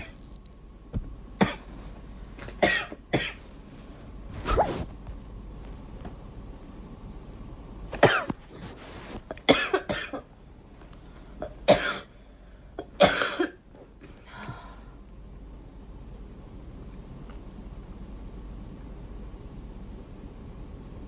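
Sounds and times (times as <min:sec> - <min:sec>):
girl coughing: 0:01.4 - 0:01.7, 0:02.6 - 0:03.4, 0:08.0 - 0:08.4, 0:09.5 - 0:10.3, 0:11.4 - 0:12.1, 0:12.8 - 0:13.6.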